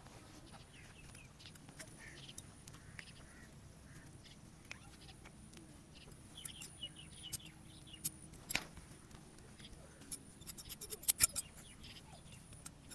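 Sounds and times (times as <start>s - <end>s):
scissors snipping hair: 6.4s - 12.9s.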